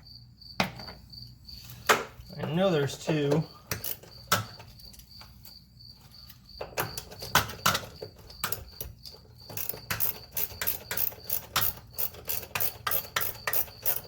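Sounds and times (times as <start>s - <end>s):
cricket chirping: 0.0s - 14.0s
hand tools clicking on metal: 3.3s - 5.3s, 6.6s - 14.0s.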